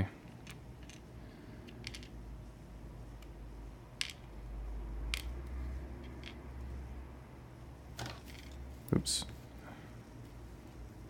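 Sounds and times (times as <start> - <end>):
metal lock parts clicking: 0.2 - 2.2.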